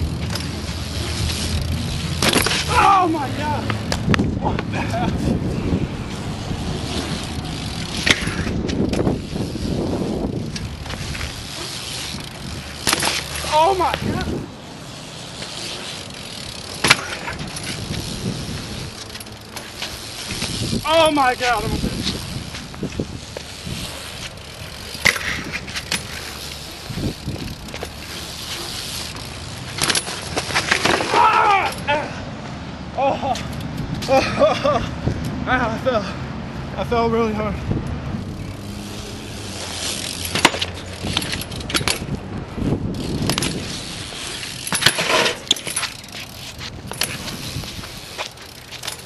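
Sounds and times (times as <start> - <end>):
bike clacks and knocks: 0.0 - 5.4, 6.8 - 31.8, 39.6 - 49.0
bike tyres rolling: 0.0 - 35.8, 36.6 - 49.0.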